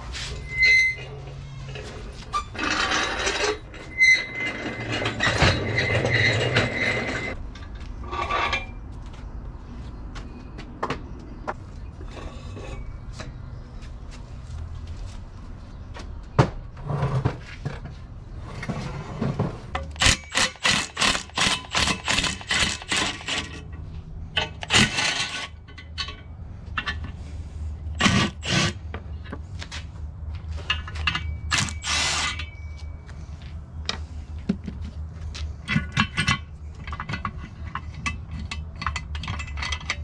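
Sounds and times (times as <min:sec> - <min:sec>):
tool scraping metal: 0:00.0 - 0:07.4, 0:20.0 - 0:23.8, 0:24.4 - 0:26.2, 0:26.8 - 0:29.2, 0:30.7 - 0:32.8
hand tools clicking on metal: 0:20.0 - 0:23.8, 0:24.4 - 0:26.2, 0:35.6 - 0:40.0.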